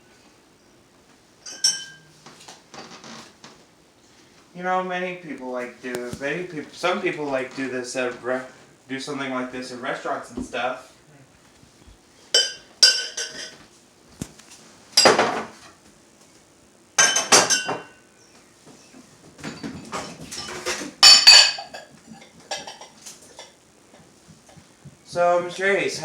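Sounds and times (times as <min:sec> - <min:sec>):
dishes clinking and clattering: 0:01.4 - 0:02.2, 0:12.4 - 0:13.6, 0:15.0 - 0:15.5, 0:17.0 - 0:18.0, 0:19.4 - 0:23.6.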